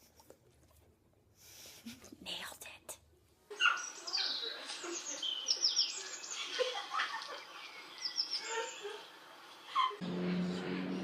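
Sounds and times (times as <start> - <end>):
flock of birds chirping: 3.6 - 10.0.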